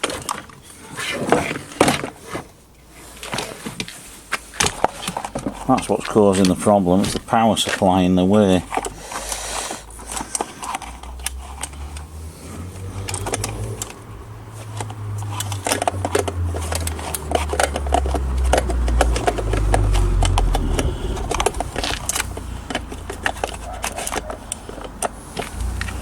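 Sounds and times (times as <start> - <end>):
hands clicking and scraping parts: 0.0 - 26.0
low rumble: 18.7 - 23.1.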